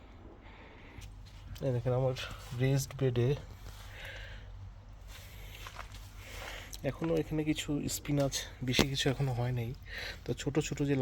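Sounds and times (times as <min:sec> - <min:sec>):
low steady rumble: 0:00.0 - 0:11.0
footsteps on wet ground: 0:05.0 - 0:09.7.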